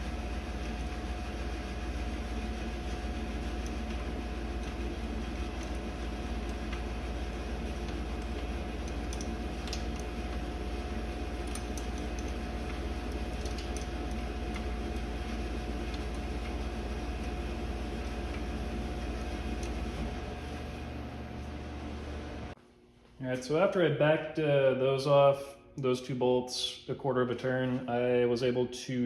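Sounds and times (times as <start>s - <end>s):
machine hum with low drone: 0.0s - 22.6s.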